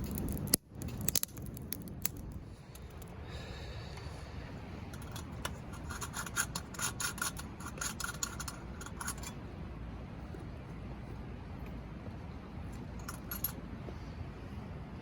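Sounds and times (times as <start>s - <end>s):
steel scraping against flint: 4.8s - 9.6s, 13.0s - 13.6s.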